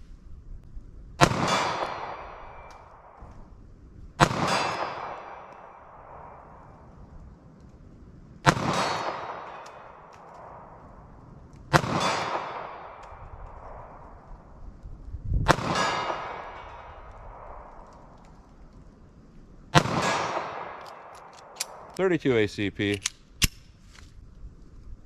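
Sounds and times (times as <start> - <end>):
pistol shots: 1.2 - 3.3, 4.2 - 6.8, 8.4 - 11.1, 11.7 - 14.2, 15.5 - 18.2, 19.8 - 22.0.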